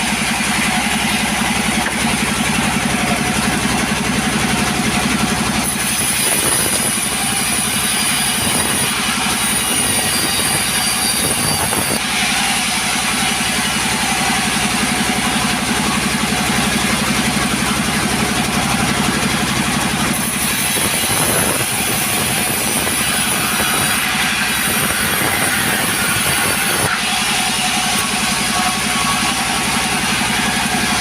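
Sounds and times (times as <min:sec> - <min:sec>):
chainsaw engine running: 0:00.0 - 0:31.0
chain cutting through wood: 0:05.6 - 0:14.5, 0:20.0 - 0:31.0.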